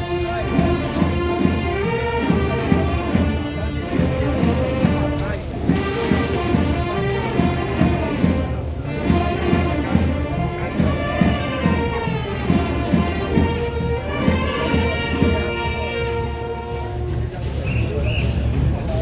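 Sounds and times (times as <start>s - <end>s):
drums with steady beat: 0.0s - 19.0s
reedy wind instrument: 0.0s - 19.0s.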